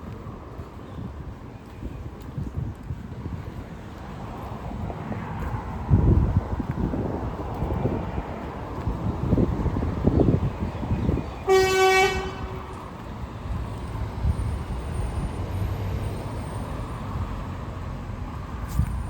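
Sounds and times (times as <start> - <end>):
street traffic rumble: 0.0 - 19.0
car horn toot: 11.4 - 12.7.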